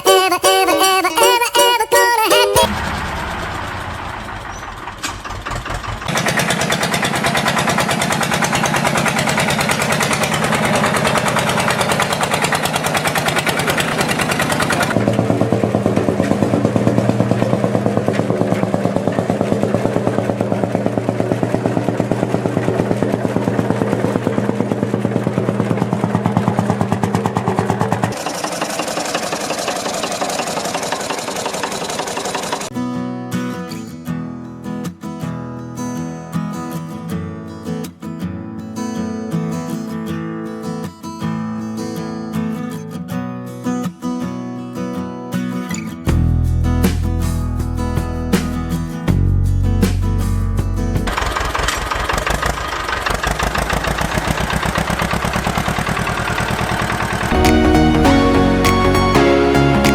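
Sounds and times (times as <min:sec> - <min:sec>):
engine running: 0:02.3 - 0:32.7, 0:46.2 - 0:59.9.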